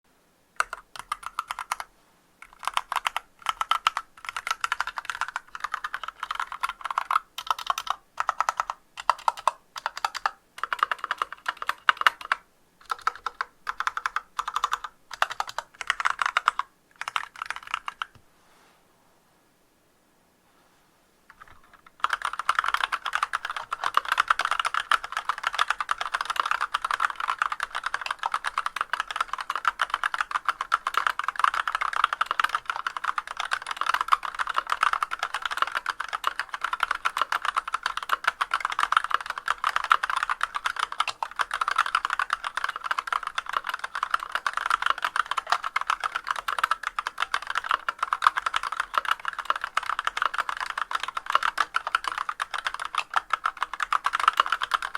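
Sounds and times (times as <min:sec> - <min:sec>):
typing on mechanical keyboard: 0:00.6 - 0:18.2, 0:21.3 - 0:54.9.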